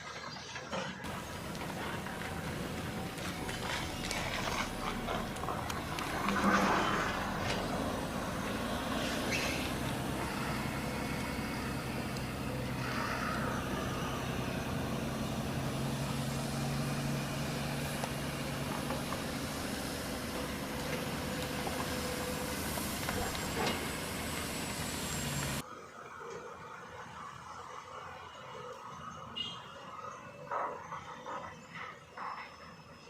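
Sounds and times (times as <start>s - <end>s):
diesel machinery engine drone: 0.8s - 29.2s.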